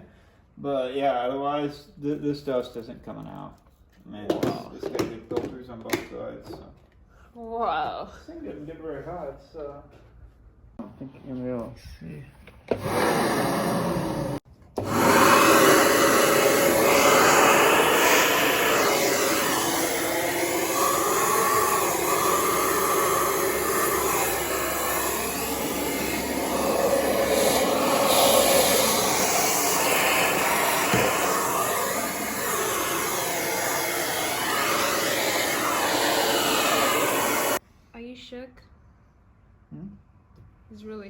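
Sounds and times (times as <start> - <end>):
vacuum cleaner running: 12.7 - 37.6.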